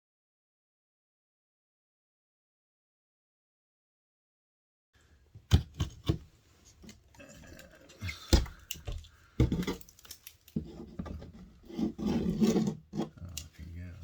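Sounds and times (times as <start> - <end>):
hard parts knocking on desk: 8.4 - 9.8.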